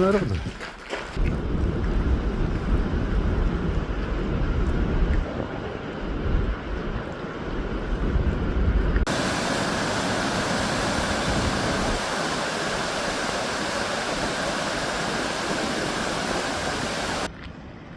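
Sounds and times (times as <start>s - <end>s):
wind rumbling on microphone: 0.0s - 17.9s
waterfall rushing: 9.1s - 17.3s.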